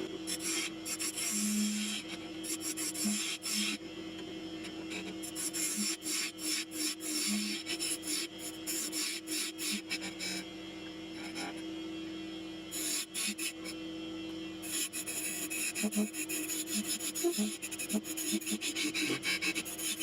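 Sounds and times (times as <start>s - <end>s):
wood lathe humming: 0.0s - 10.6s, 12.6s - 13.8s, 14.6s - 20.0s
tool scraping spinning wood: 14.6s - 20.0s.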